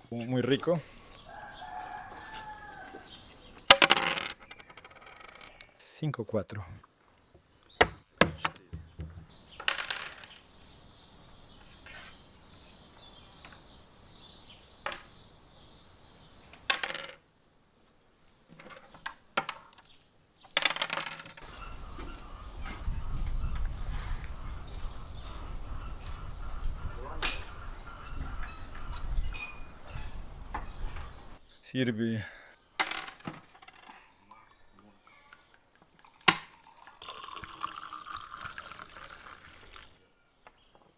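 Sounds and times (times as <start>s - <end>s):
dice clattering on a board: 3.7s - 5.6s, 9.6s - 10.4s, 16.7s - 17.2s, 19.4s - 21.4s, 32.8s - 33.9s
game pieces clacking: 3.7s - 5.6s.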